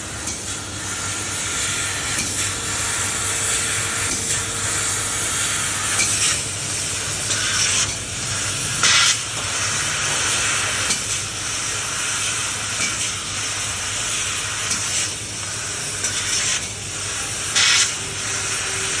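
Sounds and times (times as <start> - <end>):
low machine hum: 0.0 - 14.4
laser cut hissing and crackling: 0.0 - 19.0.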